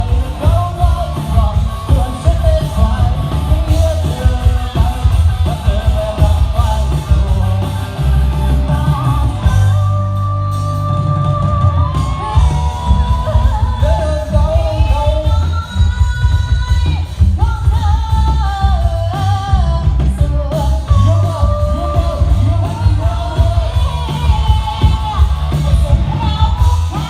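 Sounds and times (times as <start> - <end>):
amplified music with singer: 0.0 - 27.0
heavy bass beat: 0.0 - 27.0
people yelling and whooping: 6.8 - 17.1.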